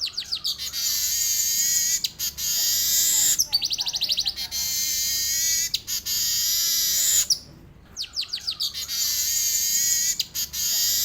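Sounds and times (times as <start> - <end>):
weaver bird buzzy song: 0.0 - 11.0.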